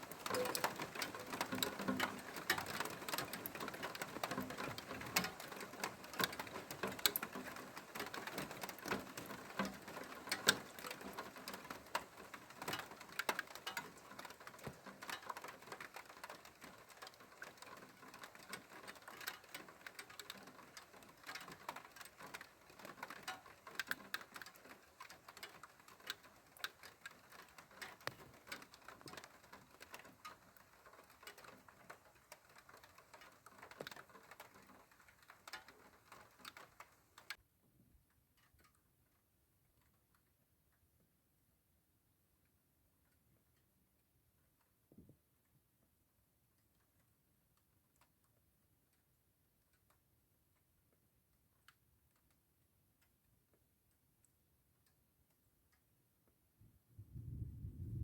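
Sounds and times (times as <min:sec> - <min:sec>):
rain pattering on hard surface: 0:00.0 - 0:37.4, 0:57.1 - 0:58.0.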